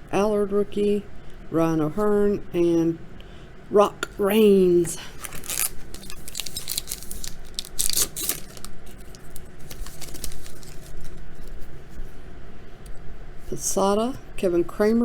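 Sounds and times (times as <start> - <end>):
cards and wrapper rustling: 4.9 - 11.7.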